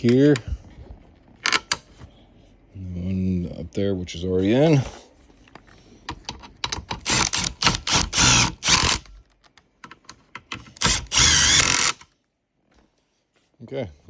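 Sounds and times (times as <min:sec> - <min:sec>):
power drill driving bolts: 0:06.7 - 0:09.2, 0:10.4 - 0:12.1.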